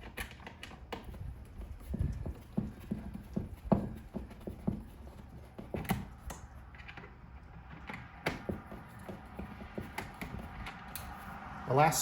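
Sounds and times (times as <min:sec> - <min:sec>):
handling clicks and knocks: 0:00.0 - 0:11.2
wind rumble on microphone: 0:00.9 - 0:04.9.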